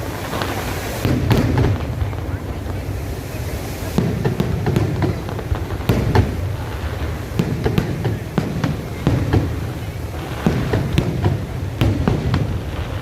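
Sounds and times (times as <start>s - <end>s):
fireworks bangs and crackles: 0.0s - 13.0s.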